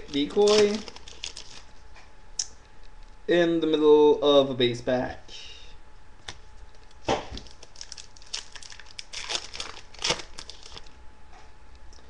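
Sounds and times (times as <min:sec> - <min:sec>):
cards being handled: 0:00.0 - 0:01.7
wrapper crinkling: 0:00.0 - 0:01.8, 0:06.8 - 0:11.0.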